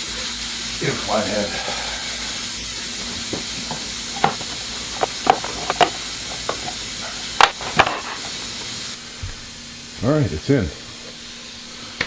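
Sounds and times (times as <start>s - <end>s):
steady hiss: 0.0s - 12.0s
screwdriver and metal parts knocking: 3.3s - 8.4s.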